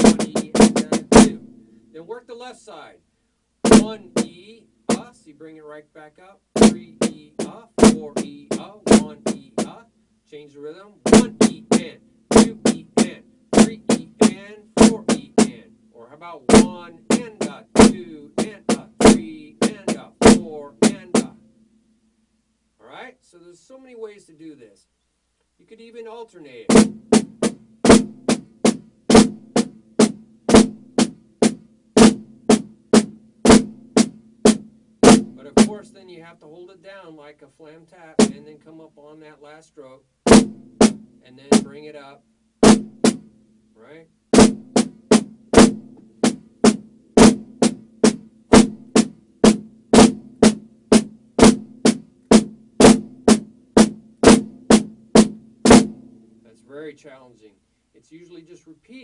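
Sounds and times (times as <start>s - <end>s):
drumsticks playing on a drum: 0.0s - 1.7s, 3.6s - 5.2s, 6.6s - 9.9s, 11.0s - 15.8s, 16.4s - 21.5s, 26.6s - 36.5s, 38.1s - 38.8s, 40.3s - 43.5s, 44.3s - 56.6s.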